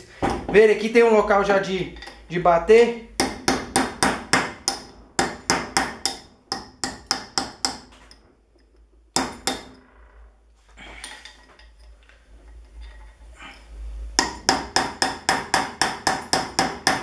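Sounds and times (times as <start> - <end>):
hammer tapping metal on metal: 3.2 - 9.8, 14.2 - 17.0.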